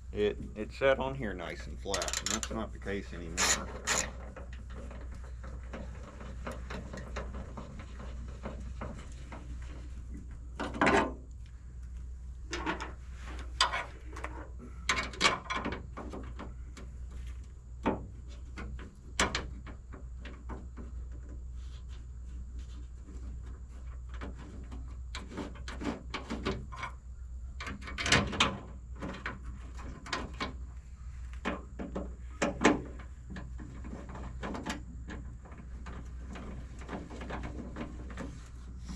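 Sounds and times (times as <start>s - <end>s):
clicks knocks and scrapes: 1.9s - 11.2s, 12.5s - 27.0s, 31.2s - 38.9s.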